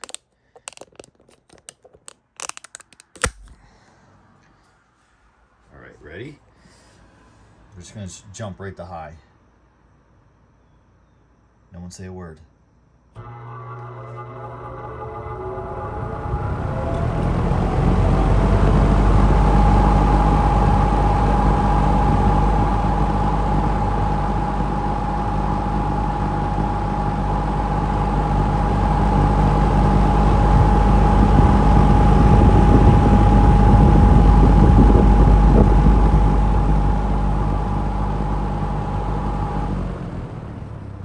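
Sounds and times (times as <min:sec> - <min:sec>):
low motor hum: 0:13.2 - 0:41.0
box fan blades chopping air: 0:16.7 - 0:39.9
thin steady whine: 0:17.0 - 0:40.0.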